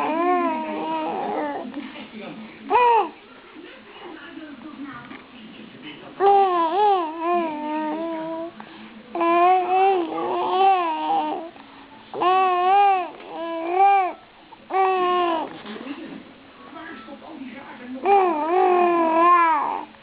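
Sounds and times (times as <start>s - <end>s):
baby cooing: 0.0s - 1.7s, 2.7s - 3.2s, 6.2s - 8.5s, 9.2s - 11.5s, 12.2s - 15.6s, 18.0s - 19.9s.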